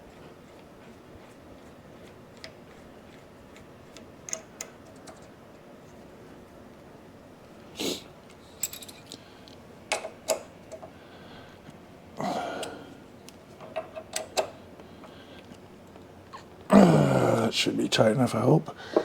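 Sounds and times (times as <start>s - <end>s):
metallic clicks and clinks: 8.6s - 9.1s.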